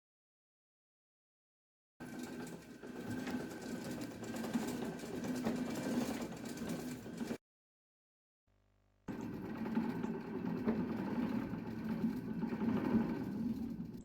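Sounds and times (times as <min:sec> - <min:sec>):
small motor droning: 0:09.1 - 0:14.0.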